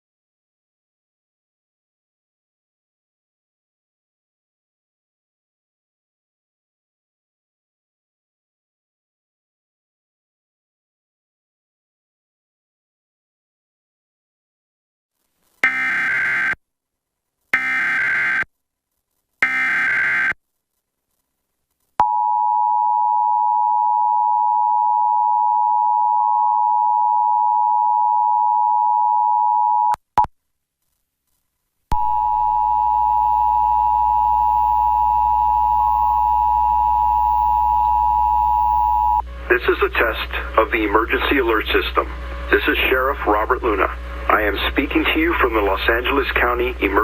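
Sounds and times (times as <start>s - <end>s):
low hum and hiss: 31.4s - 47.0s
two-tone attention signal: 32.0s - 39.2s.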